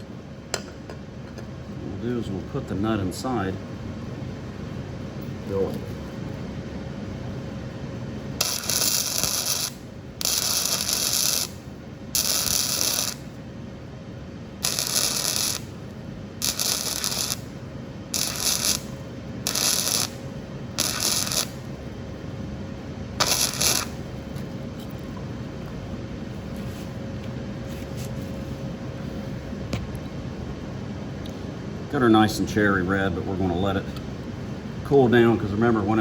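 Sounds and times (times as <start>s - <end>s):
welder arc crackling: 8.3s - 13.4s, 14.5s - 21.8s, 23.2s - 24.4s.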